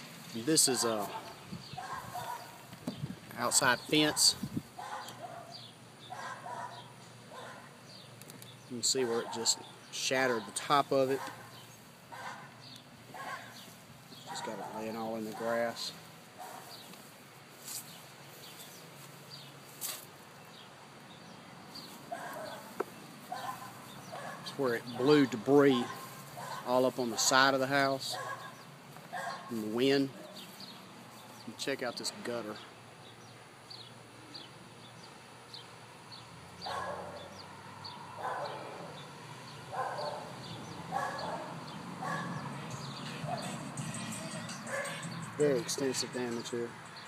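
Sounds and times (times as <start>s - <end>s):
dog barking: 0.8s - 2.6s, 4.1s - 7.7s, 11.2s - 12.5s, 13.1s - 13.6s, 14.3s - 15.6s, 16.4s - 16.7s, 22.1s - 22.7s, 23.3s - 25.1s, 25.8s - 27.3s, 28.1s - 29.6s, 36.6s - 37.3s, 38.2s - 39.0s, 39.7s - 42.5s, 43.2s - 43.6s, 44.7s - 45.1s
bird chirps: 32.6s - 47.0s.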